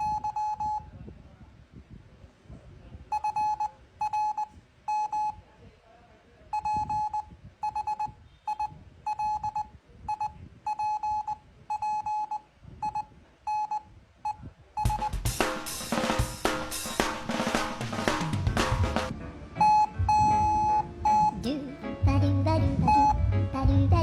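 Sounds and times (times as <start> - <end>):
morse code beeps: 0.0 - 0.9, 3.1 - 5.4, 6.6 - 15.2, 19.6 - 21.4, 22.8 - 23.2.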